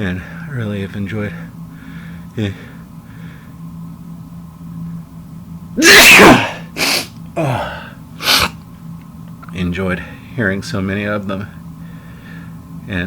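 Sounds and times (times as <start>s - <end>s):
man sneezing: 5.8s - 8.6s
short bursts of breath: 6.2s - 7.1s.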